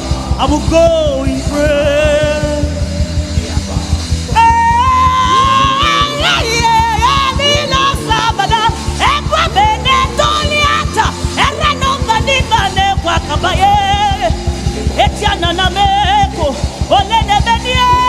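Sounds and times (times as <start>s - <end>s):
backing music with low beat: 0.0s - 18.0s
woman singing wordlessly: 4.3s - 18.0s.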